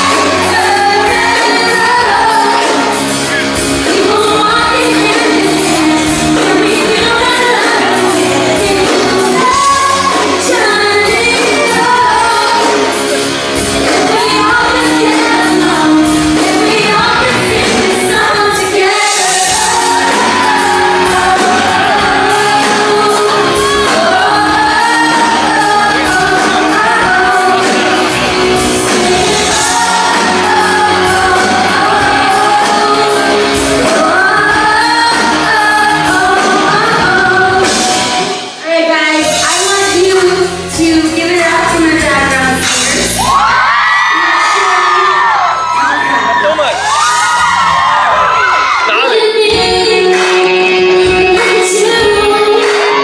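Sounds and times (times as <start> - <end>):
live pop band with singer: 0.0 - 53.0
crowd shouting: 43.1 - 49.3.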